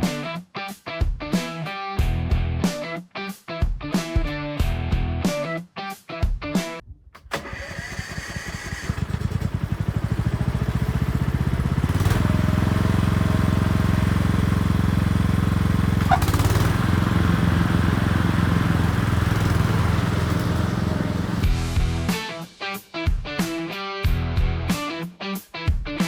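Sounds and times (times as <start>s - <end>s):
lawnmower engine running: 7.0s - 21.6s.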